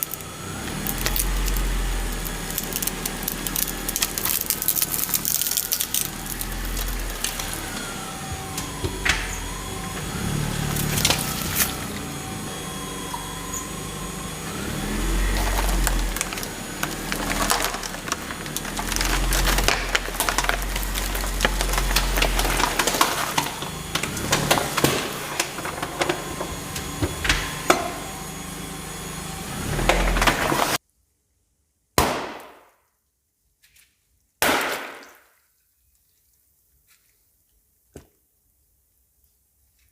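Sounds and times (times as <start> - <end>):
tyres crushing brittle objects: 0.0 - 28.2
car rumbling: 0.0 - 30.8.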